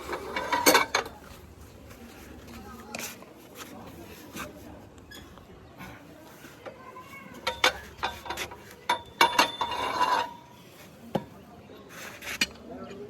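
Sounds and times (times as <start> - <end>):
metal tools clanking: 0.0 - 1.3, 7.3 - 10.5.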